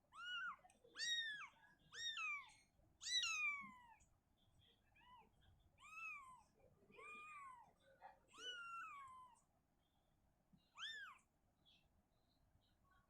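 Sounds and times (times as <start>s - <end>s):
cat meowing: 0.1s - 4.0s, 8.3s - 9.4s, 10.8s - 11.2s.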